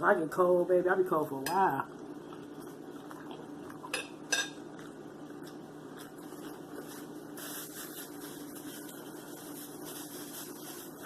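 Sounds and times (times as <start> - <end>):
faint steady hum: 0.0 - 11.0
tableware clinking: 3.9 - 4.6.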